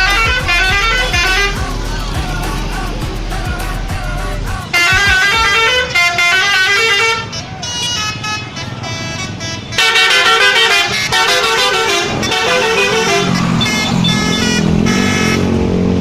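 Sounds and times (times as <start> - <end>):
lower-pitched horn: 0.0 - 1.6, 8.9 - 15.6
musical air horns: 0.0 - 15.6.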